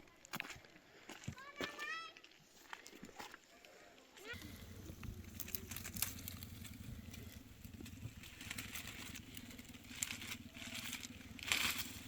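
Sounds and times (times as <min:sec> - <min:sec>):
small engine running: 0:04.3 - 0:12.0
clicks and crackles: 0:04.4 - 0:12.0.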